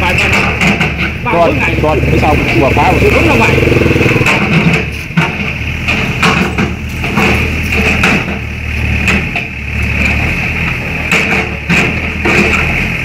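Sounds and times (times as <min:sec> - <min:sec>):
debris knocking and clattering: 0:00.0 - 0:01.6, 0:04.2 - 0:13.0
diesel engine running: 0:00.0 - 0:13.0.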